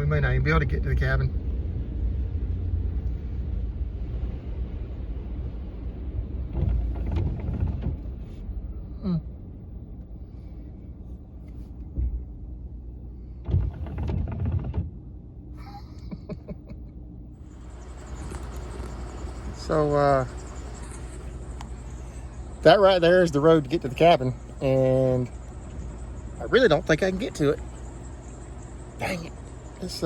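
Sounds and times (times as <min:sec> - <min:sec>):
vehicle rumbling on rough road: 0:00.0 - 0:30.0
vehicle knocks and bumps: 0:06.3 - 0:08.4, 0:11.9 - 0:12.4, 0:13.4 - 0:15.2.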